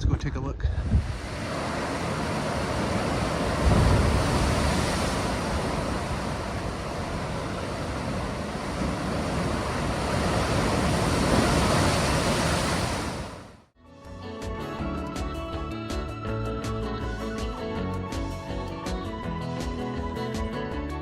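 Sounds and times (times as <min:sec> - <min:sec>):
wind gusting on microphone: 0:00.0 - 0:13.6
ocean surf rushing: 0:00.8 - 0:13.6.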